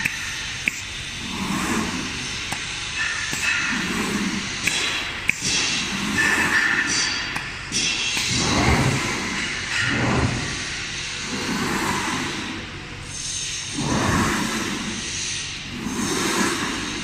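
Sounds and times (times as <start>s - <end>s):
sharp clicks: 0.0s - 0.9s, 4.6s - 5.7s
cutting machine mechanical noise: 0.0s - 13.0s.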